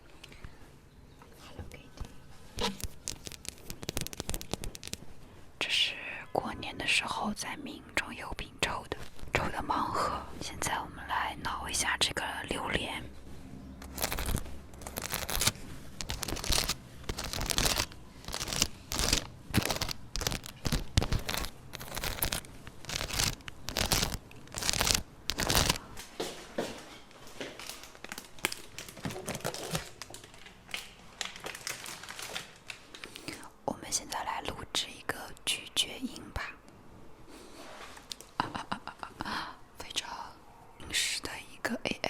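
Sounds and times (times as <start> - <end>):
fingernails scratching fruit rind: 13.8 - 25.8.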